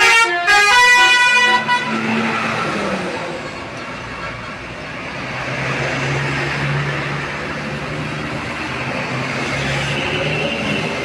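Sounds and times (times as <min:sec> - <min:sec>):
bus engine droning: 0:00.0 - 0:11.0
traffic noise: 0:00.0 - 0:11.0.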